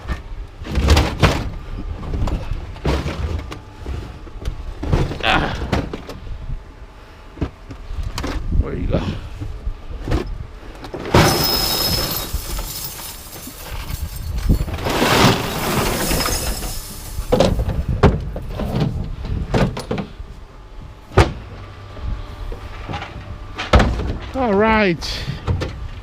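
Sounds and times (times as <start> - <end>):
metal pieces clanking: 11.0 - 17.7
metal scraping and sliding: 11.1 - 17.6.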